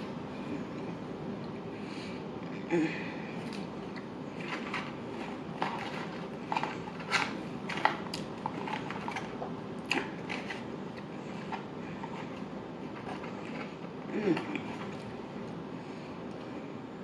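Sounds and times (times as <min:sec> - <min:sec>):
person chewing food: 0:03.3 - 0:15.6.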